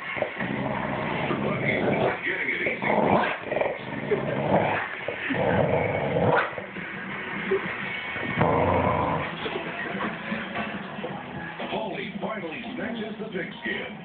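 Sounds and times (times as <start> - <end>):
dog growling: 0.0 - 10.1.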